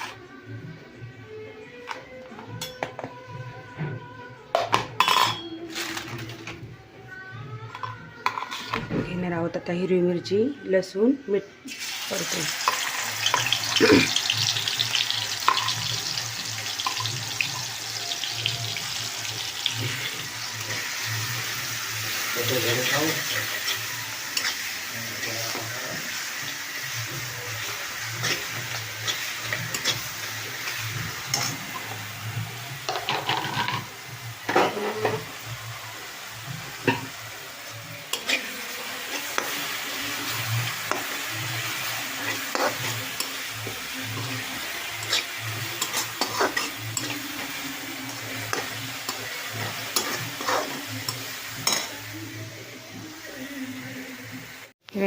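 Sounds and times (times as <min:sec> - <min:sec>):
food sizzling in hot oil: 0:11.7 - 0:54.8
spatula scraping pan: 0:27.0 - 0:32.0, 0:38.0 - 0:39.6, 0:42.1 - 0:51.9.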